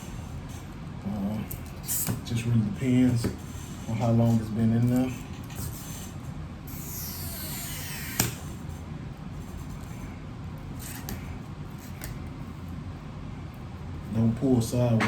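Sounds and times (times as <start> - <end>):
adhesive strip squeaking: 6.7 - 8.5.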